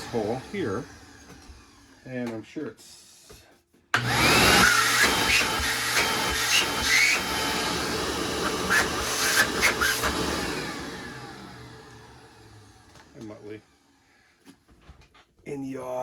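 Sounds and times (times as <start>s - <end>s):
vacuum motor whining: 0.0s - 2.3s, 4.0s - 14.0s.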